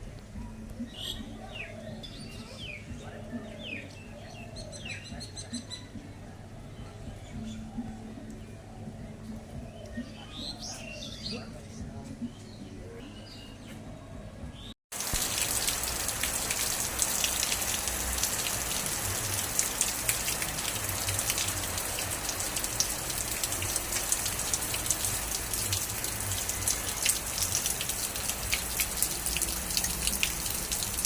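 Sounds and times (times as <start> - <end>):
rain falling: 14.9 - 31.0.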